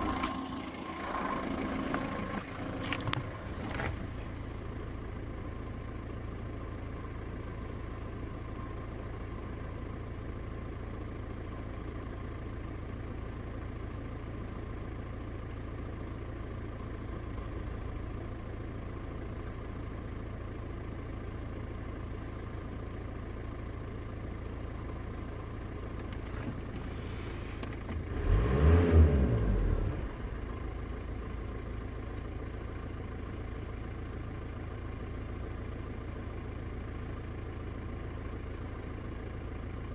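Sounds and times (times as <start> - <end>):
engine revving: 0.0 - 4.3, 26.2 - 30.6
car engine idling: 0.0 - 39.9.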